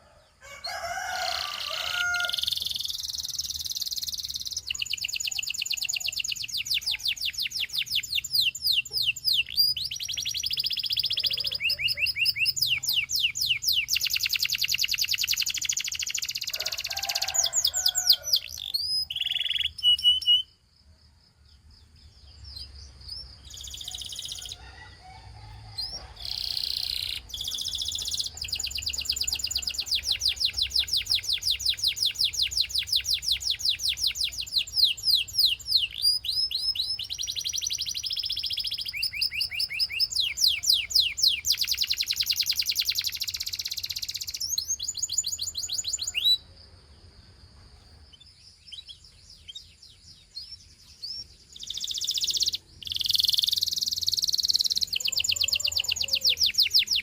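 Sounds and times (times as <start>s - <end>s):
canary chirps: 0.0s - 20.7s, 21.6s - 46.5s, 47.9s - 57.0s
canary singing trills: 0.0s - 20.7s, 21.6s - 46.5s, 47.9s - 57.0s.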